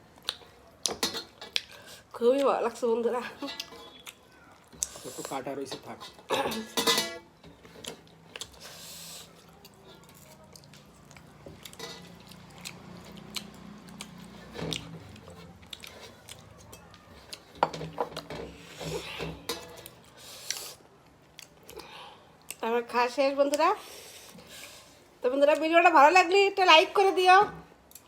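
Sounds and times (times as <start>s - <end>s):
chewing and lip smacking: 0.2s - 0.9s, 7.8s - 17.6s, 19.8s - 22.6s.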